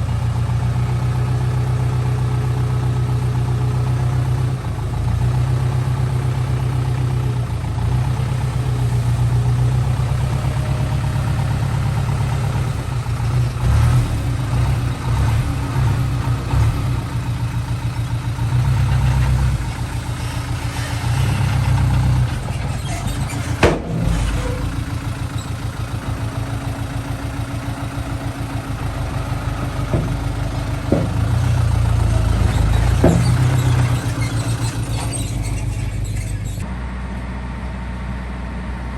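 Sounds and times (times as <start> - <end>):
diesel engine of earthmoving equipment: 0.0 - 38.9
sharp knocks: 29.7 - 33.9.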